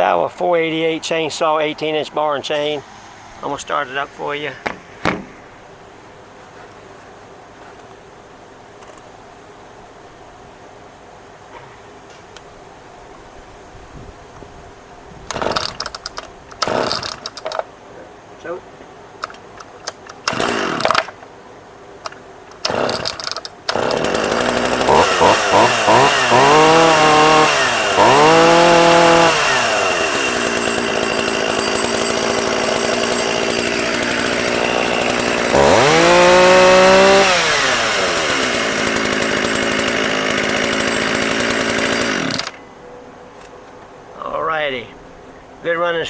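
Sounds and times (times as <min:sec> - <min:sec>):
chainsaw revving and idling: 0:04.6 - 0:05.4, 0:15.3 - 0:16.0, 0:16.6 - 0:17.3, 0:20.2 - 0:21.2, 0:22.6 - 0:42.6
starter cord pulls: 0:04.6 - 0:05.4.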